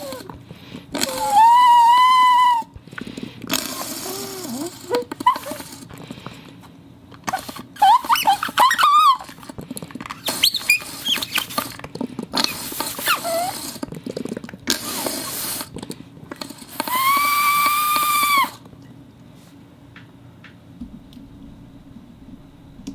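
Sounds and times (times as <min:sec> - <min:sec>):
steady whistling tone: 0:01.1 - 0:02.8
hiss: 0:03.5 - 0:05.9, 0:10.2 - 0:11.8, 0:12.4 - 0:13.8, 0:14.8 - 0:15.8, 0:16.4 - 0:18.6
squeaky chirps: 0:07.8 - 0:09.3, 0:10.2 - 0:11.6.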